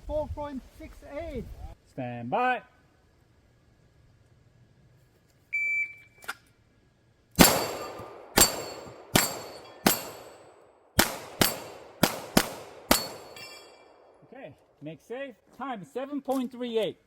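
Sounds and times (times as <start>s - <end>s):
steel plates ringing: 7.4s - 10.6s, 12.9s - 14.0s
gunshots: 7.4s - 13.4s.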